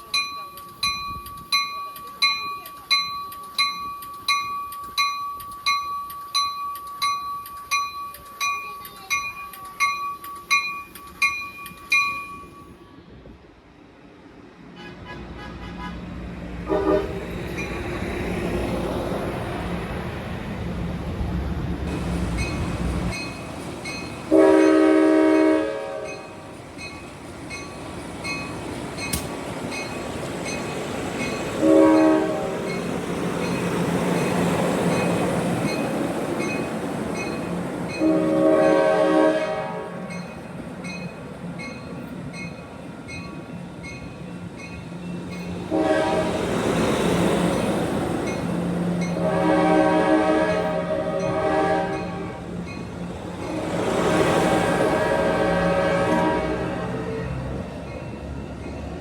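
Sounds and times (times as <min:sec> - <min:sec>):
train rumble and rail noise: 0:00.0 - 0:59.0
train horn blasts: 0:14.8 - 0:17.3, 0:24.3 - 0:26.4, 0:31.6 - 0:32.7, 0:38.0 - 0:40.1, 0:45.7 - 0:46.5, 0:49.2 - 0:52.5, 0:53.5 - 0:57.4.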